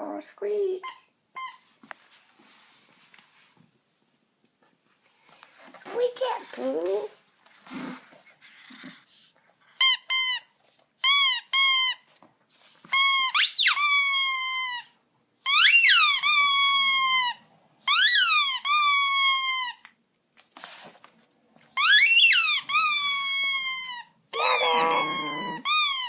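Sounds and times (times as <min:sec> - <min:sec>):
squeaky dog toy squeaking: 0:00.8 - 0:01.7, 0:09.8 - 0:12.1, 0:12.9 - 0:19.8, 0:21.8 - 0:26.0.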